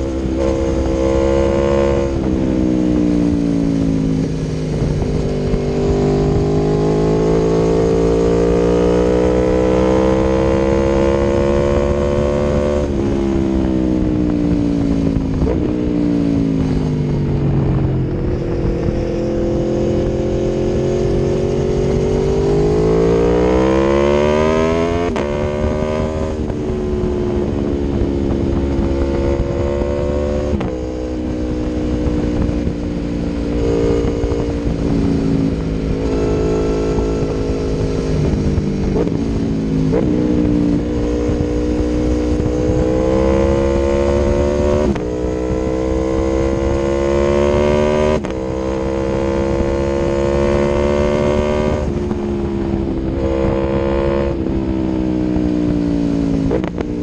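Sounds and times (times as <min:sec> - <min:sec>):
motorcycle engine accelerating: 0:00.0 - 0:57.0.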